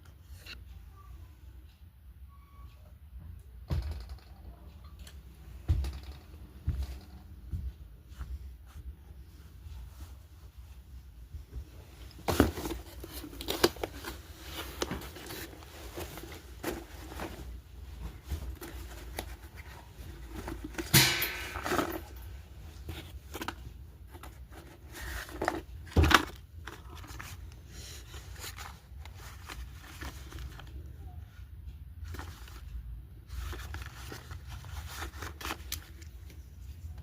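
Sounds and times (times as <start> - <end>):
packaging rustling and crinkling: 12.0 - 30.8, 32.0 - 36.4.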